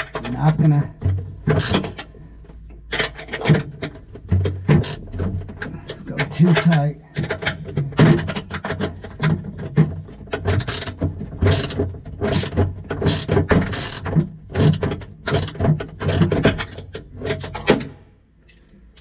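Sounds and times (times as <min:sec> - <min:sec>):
hand ratchet clicking: 0:10.5 - 0:16.9
small metal clicks: 0:18.4 - 0:19.0.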